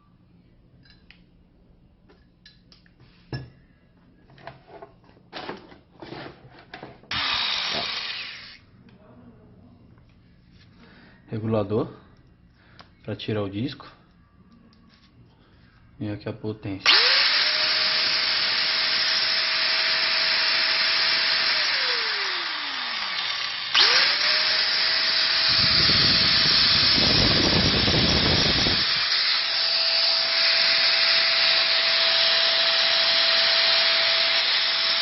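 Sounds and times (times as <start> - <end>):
angle grinder whining: 7.1 - 8.6, 16.8 - 35.0.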